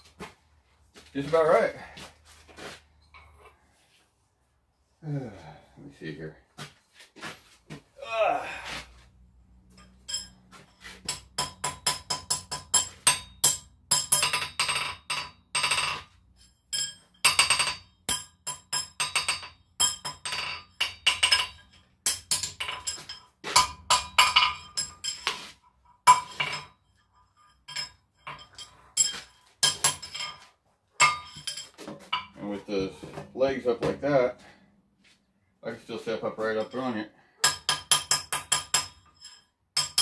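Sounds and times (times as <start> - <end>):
hammer striking anvil: 11.0 - 16.1, 16.8 - 25.4, 37.4 - 40.0.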